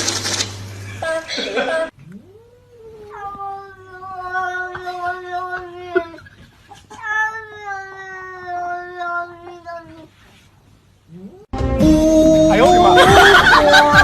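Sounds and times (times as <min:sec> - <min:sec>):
cat yowling: 0:02.1 - 0:06.2.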